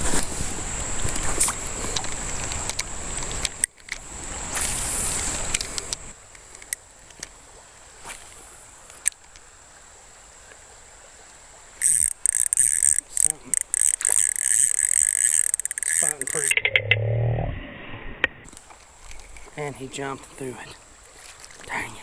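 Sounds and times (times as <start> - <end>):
stream murmur: 0.0 - 17.0, 18.1 - 22.0
small clicks: 1.1 - 4.0, 11.8 - 17.0
creek water sloshing and splashing: 18.5 - 22.0.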